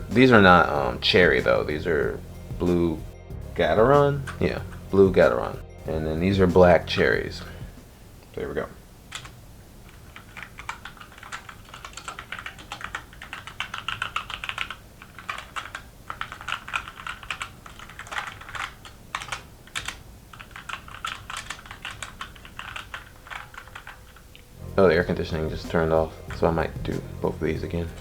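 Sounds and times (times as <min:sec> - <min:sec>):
mechanical keyboard typing: 0:09.1 - 0:24.3.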